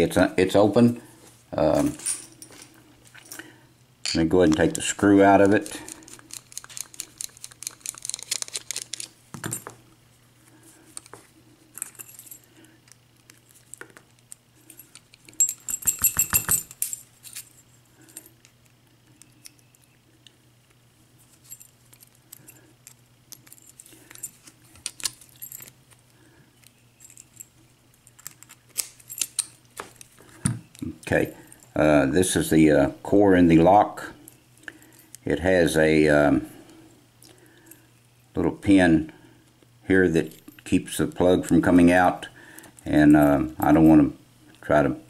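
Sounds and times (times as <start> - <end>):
padlock metal clicks and clinks: 5.4 - 9.7, 14.3 - 17.5, 21.4 - 25.8, 26.6 - 29.7.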